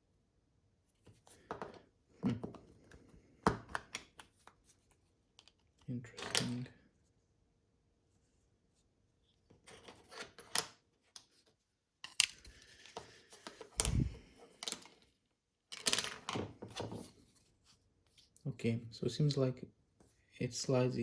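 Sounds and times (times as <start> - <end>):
plastic parts clicking and scraping: 9.5 - 15.1, 15.7 - 17.1.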